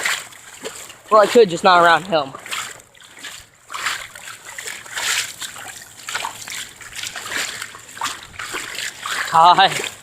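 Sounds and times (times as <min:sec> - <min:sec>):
wading through deep water: 0:00.0 - 0:10.0.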